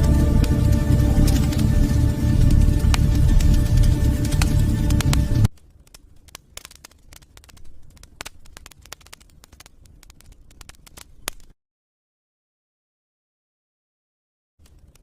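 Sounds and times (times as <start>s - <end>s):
background music: 0.0s - 5.5s
faint low rumble: 0.0s - 11.2s
wood fire crackling: 0.0s - 11.5s, 14.6s - 15.0s.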